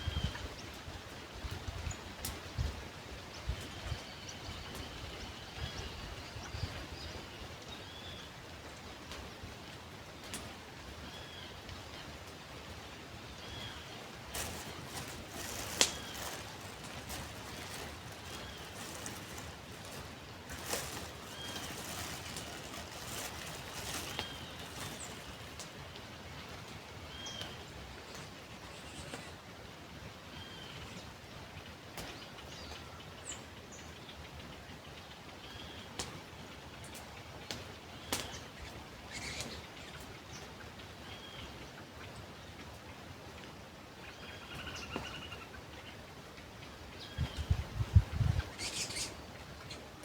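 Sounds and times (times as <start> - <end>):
river and wind noise: 0.0 - 27.0, 45.6 - 50.0
wind bumps on microphone: 47.2 - 48.6.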